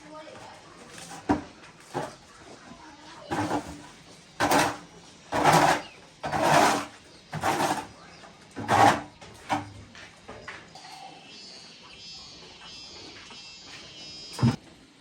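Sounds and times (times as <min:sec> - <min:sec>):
rough scraping strokes: 0:03.3 - 0:07.9, 0:08.6 - 0:09.7.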